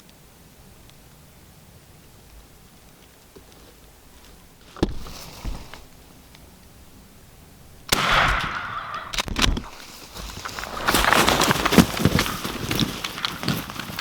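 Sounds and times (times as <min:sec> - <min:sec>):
sharp clicks: 0:07.9 - 0:09.9.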